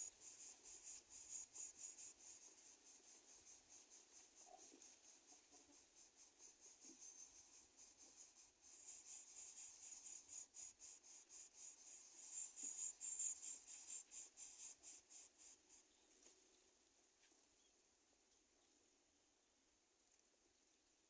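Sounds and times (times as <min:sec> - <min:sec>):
high-pitched insect chirping: 0:00.0 - 0:15.6.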